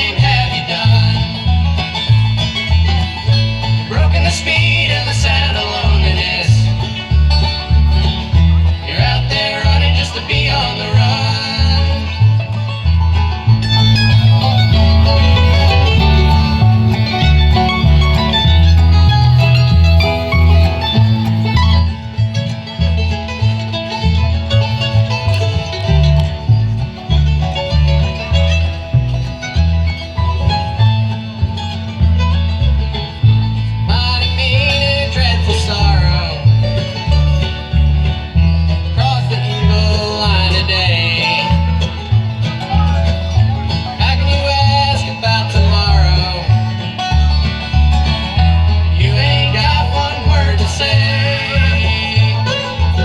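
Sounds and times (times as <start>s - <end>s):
banjo picking: 0.0s - 53.0s
bass line: 0.0s - 53.0s
guitar picking: 0.0s - 53.0s
wavering melody line: 13.3s - 22.0s.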